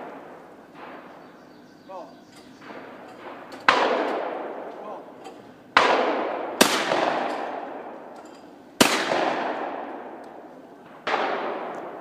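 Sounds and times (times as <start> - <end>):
shotgun blasts with echo: 2.6 - 5.1, 5.7 - 8.2, 8.8 - 12.0.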